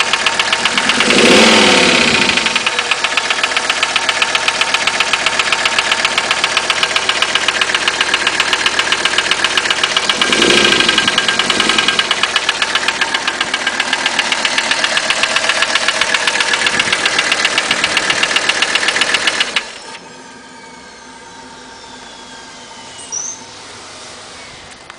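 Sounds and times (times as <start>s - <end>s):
diesel engine knocking: 0.0s - 19.8s.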